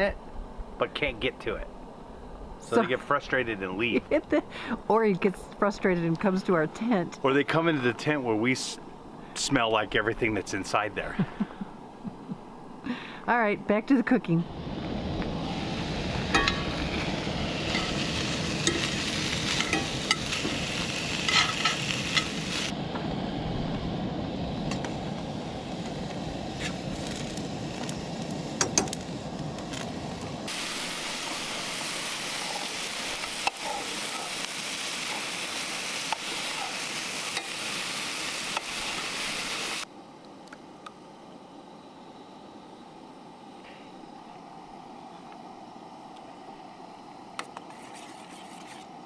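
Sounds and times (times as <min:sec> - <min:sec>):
food sizzling in a pan: 0:14.9 - 0:22.8, 0:30.4 - 0:39.9.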